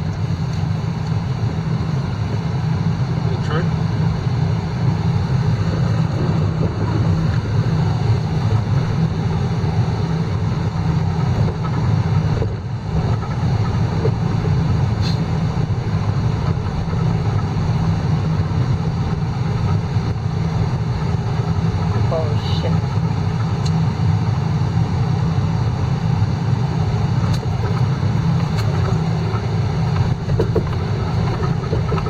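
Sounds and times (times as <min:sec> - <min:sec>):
vehicle engine and tyres rumbling: 0:00.0 - 0:32.0.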